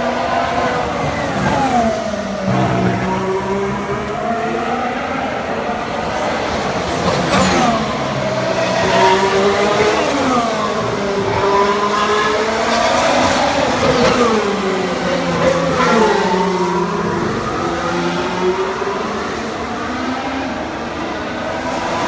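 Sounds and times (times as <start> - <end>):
racing cars passing at speed: 0.0 - 22.0
steady engine drone: 0.8 - 12.6.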